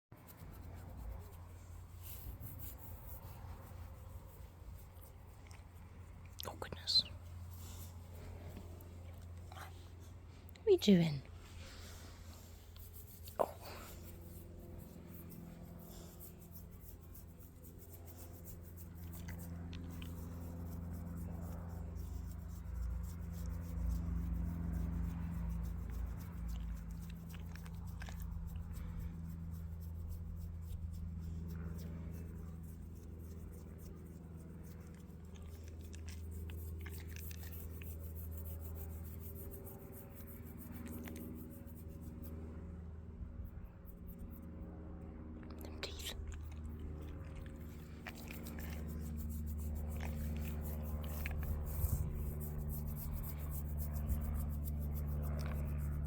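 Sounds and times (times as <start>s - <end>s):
low steady hum: 0.2s - 56.0s
dog chewing and biting: 34.8s - 38.0s, 45.9s - 52.2s.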